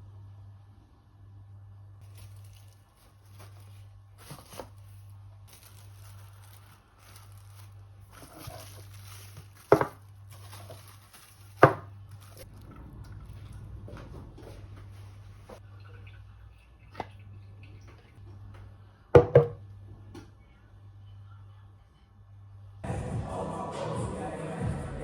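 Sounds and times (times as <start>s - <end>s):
handling and rustling: 2.0s - 15.6s.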